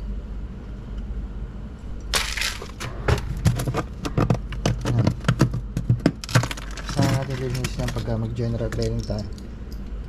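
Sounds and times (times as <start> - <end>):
steady low hum: 0.0 - 10.0
sharp knocks and clatters: 2.6 - 9.2
ice scraping in freezer: 6.2 - 8.1.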